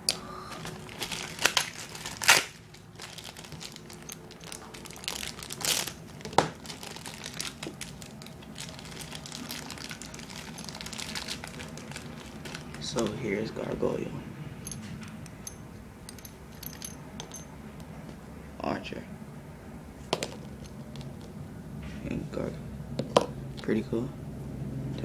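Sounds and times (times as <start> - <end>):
plastic packaging crinkling: 0.5 - 13.3.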